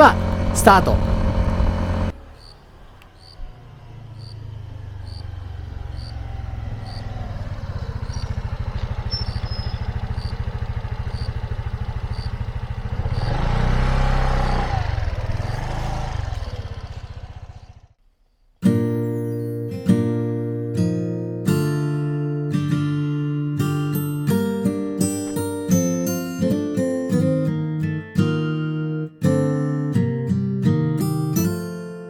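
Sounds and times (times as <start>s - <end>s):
faint regular ticking: 0.0s - 3.1s
scooter engine running: 0.0s - 18.0s.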